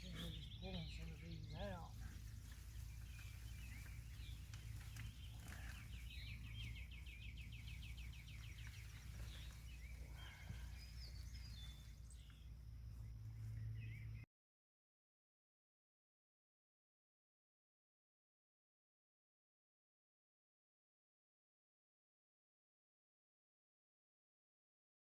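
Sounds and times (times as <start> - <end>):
birds chirping: 0.0 - 14.3
low outdoor rumble: 0.0 - 14.3.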